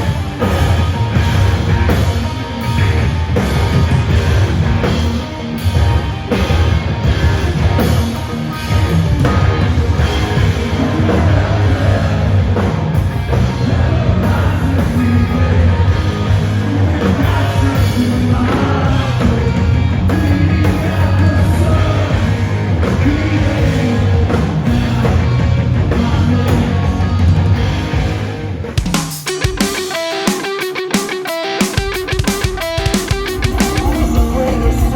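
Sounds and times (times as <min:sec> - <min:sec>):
live rock band: 0:00.0 - 0:34.9
person singing: 0:10.0 - 0:26.9, 0:33.5 - 0:34.9.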